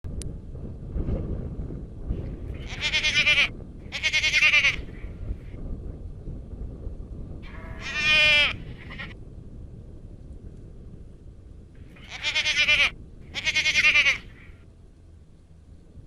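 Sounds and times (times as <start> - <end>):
goat bleating: 2.6 - 4.8, 7.5 - 9.2, 12.0 - 14.4.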